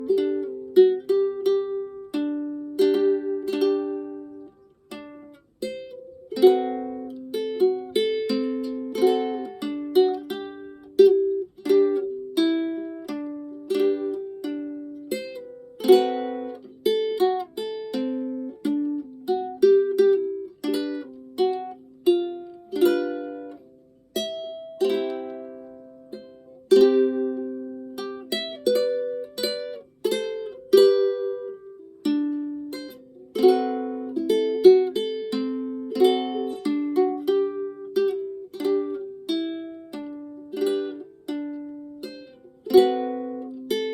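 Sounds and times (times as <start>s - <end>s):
ukulele melody: 0.0s - 43.9s.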